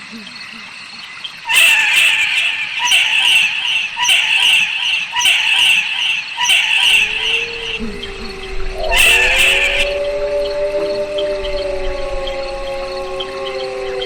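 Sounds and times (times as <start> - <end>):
owl screeching: 1.5 - 14.0
low rising tone: 7.1 - 14.0.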